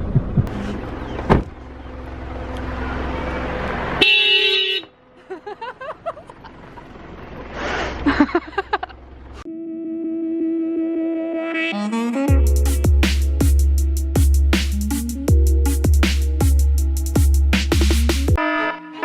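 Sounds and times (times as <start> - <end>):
low vehicle rumble: 0.0 - 4.0, 4.9 - 10.1
music: 9.5 - 19.0.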